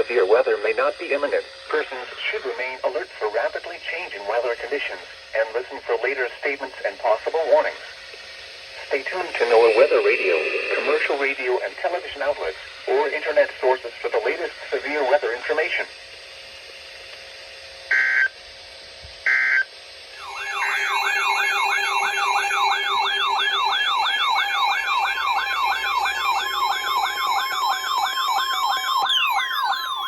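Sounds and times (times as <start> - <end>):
emergency alert data tones: 8.7 - 15.2, 20.2 - 30.0
electronic siren tone warbling: 8.8 - 13.4, 17.9 - 18.3, 19.3 - 30.0.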